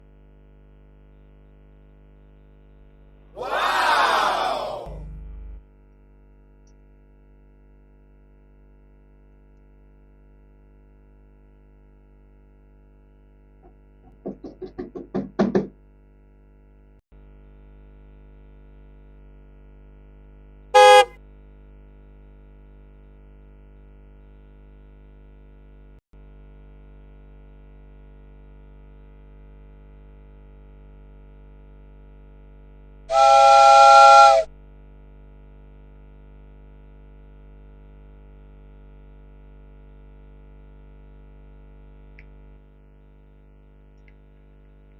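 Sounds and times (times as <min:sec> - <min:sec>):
toy truck horn honks: 0:20.8 - 0:21.2, 0:33.1 - 0:34.5.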